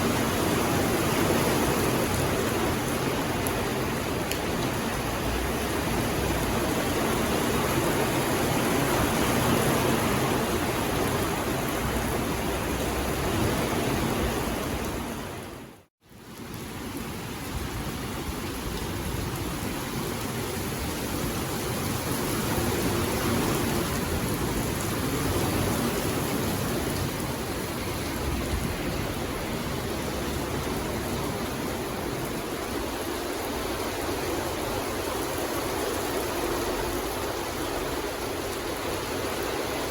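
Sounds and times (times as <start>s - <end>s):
steady rain in a forest: 0.0s - 39.9s.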